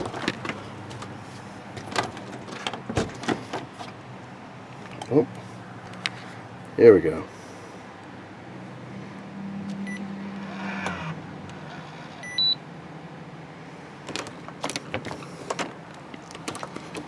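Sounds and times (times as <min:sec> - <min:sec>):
door lock motor whirr: 0:09.9 - 0:12.5
high electronic beeps: 0:12.2 - 0:12.6.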